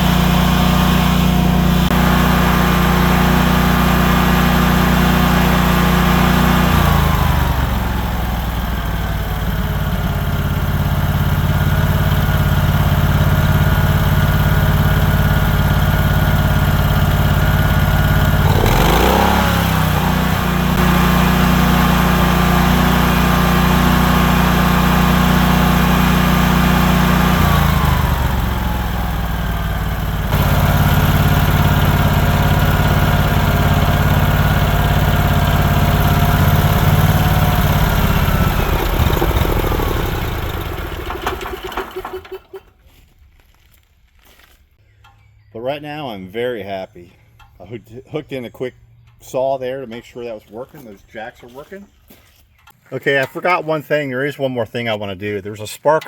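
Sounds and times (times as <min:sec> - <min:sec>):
generator engine running: 0:00.0 - 0:42.8.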